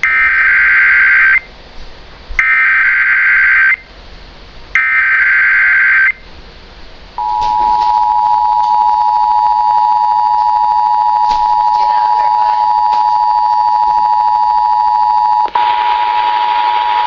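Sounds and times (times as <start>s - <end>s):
two-tone attention signal: 7.2s - 17.0s.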